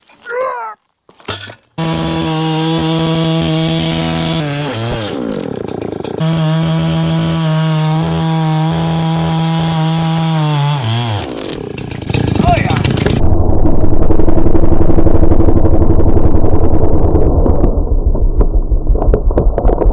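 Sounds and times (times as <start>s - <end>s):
chainsaw revving: 1.8s - 13.2s.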